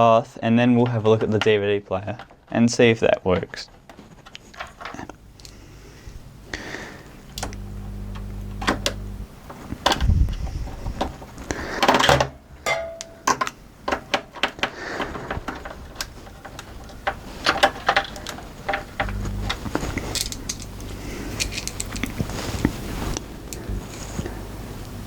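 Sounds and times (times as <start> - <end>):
steady low hum: 5.0 - 13.9, 15.0 - 25.0.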